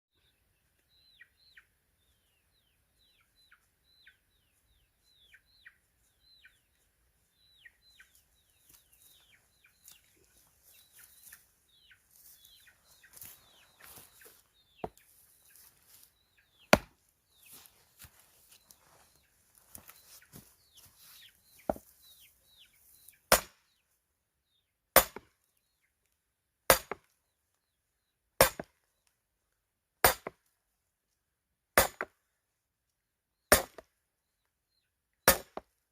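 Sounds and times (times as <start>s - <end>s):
falling bird chirps: 7.5s - 23.4s
axe chopping firewood: 16.7s - 17.0s, 23.3s - 23.6s, 25.0s - 25.3s, 26.7s - 27.1s, 28.4s - 28.8s, 30.0s - 30.5s, 31.8s - 32.2s, 33.5s - 33.9s, 35.3s - 35.7s.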